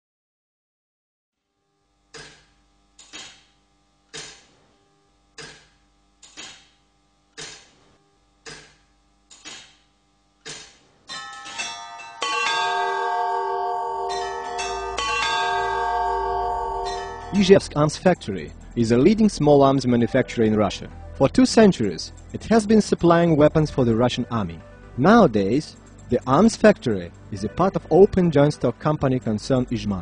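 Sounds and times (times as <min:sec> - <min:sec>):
bell-like struck notes: 0:11.1 - 0:18.2
full music with sustained notes: 0:11.4 - 0:19.1.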